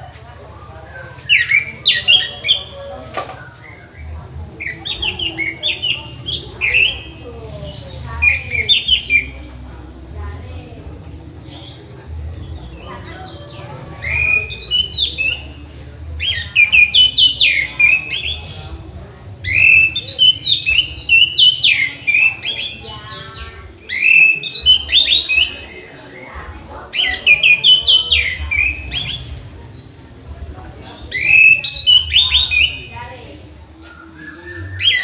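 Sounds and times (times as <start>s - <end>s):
thrush singing whistled phrases: 19.5s - 22.9s, 23.8s - 25.7s, 31.1s - 32.9s, 33.8s - 35.0s.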